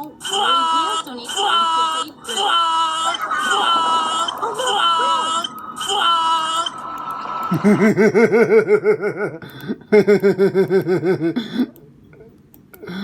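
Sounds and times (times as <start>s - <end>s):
person making warbling nonsense sound: 1.3s - 8.2s.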